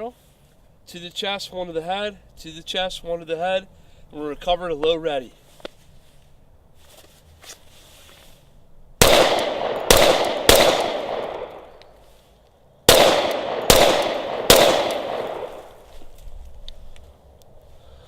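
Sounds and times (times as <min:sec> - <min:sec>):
pistol shots with long echo: 0:09.0 - 0:11.8, 0:12.9 - 0:15.9.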